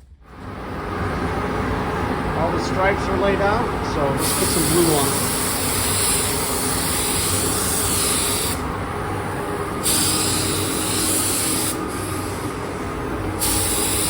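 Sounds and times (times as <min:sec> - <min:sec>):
paint spray gun hissing: 0:04.2 - 0:14.0.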